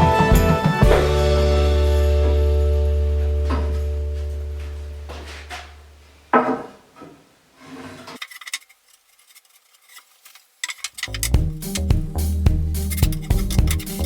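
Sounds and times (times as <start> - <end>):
background music: 0.0 - 4.9, 11.1 - 14.0
hard objects clinking: 8.2 - 11.4, 12.9 - 14.0.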